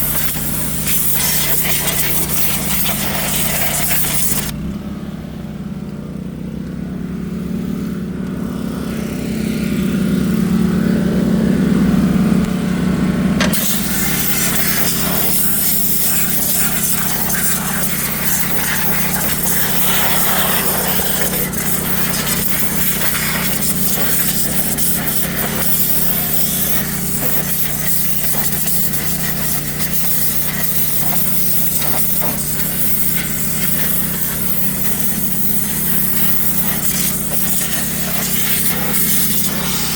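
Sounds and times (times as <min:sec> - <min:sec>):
water jet hissing: 0:00.0 - 0:04.5, 0:13.4 - 0:39.9
pressure washer motor humming: 0:00.0 - 0:04.6, 0:08.6 - 0:39.9.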